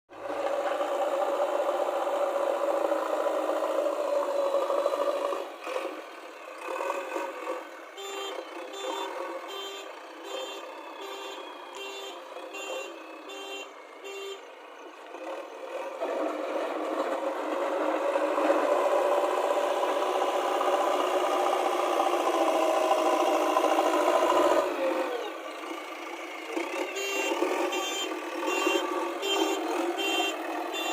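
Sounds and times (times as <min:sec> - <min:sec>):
diesel engine running: 0:00.1 - 0:30.9
reversing alarm beeping: 0:08.0 - 0:14.7, 0:26.8 - 0:30.9.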